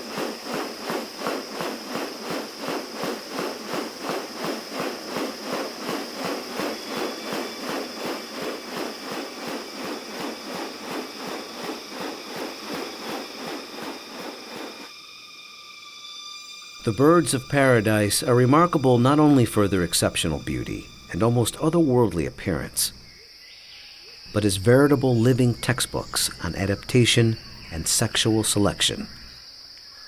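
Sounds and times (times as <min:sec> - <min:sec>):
steady high-pitched whine: 0:00.0 - 0:23.3
pulsing insect chorus: 0:00.0 - 0:30.0.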